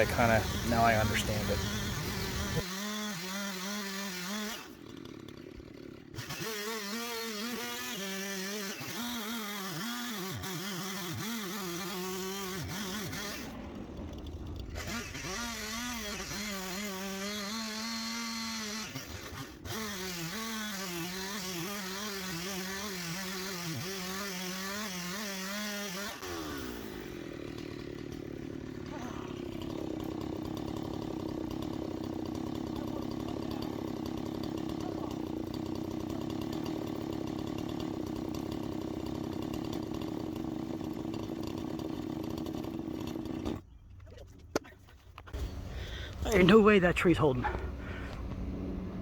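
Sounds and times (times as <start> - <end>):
chainsaw cutting wood: 0.0 - 43.6, 45.3 - 49.0.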